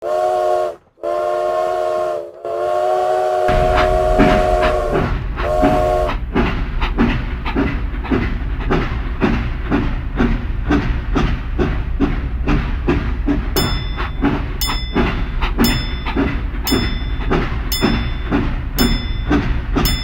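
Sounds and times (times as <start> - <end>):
steam locomotive whistle: 0.0 - 6.2
low train rumble: 0.0 - 20.0
rail clatter: 3.5 - 20.0
rhythmic chuffing: 3.5 - 20.0.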